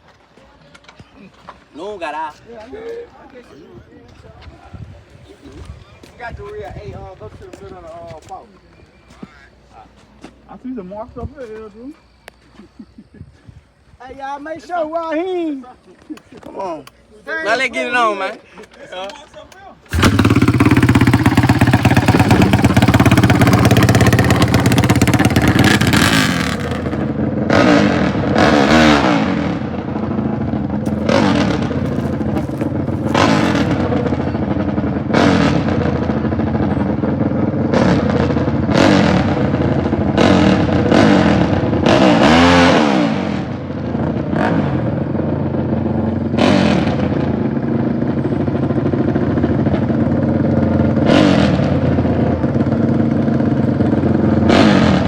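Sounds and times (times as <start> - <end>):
dirt bike engine full throttle: 19.8 - 55.0
dirt bike engine revving: 19.9 - 48.1, 48.7 - 55.0.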